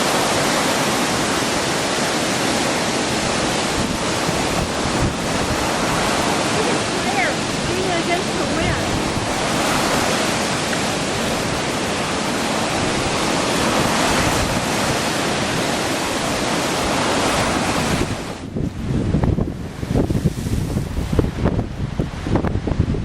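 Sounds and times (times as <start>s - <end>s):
strong wind rushing: 0.0s - 23.0s
wind-driven water: 0.0s - 23.0s
wind hitting microphone: 3.1s - 23.0s.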